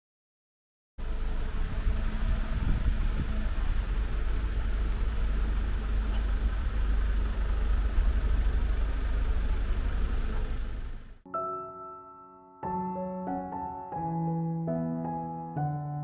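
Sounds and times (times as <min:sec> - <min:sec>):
vehicle engine rumble: 0:01.0 - 0:11.2
piano music: 0:11.2 - 0:16.0.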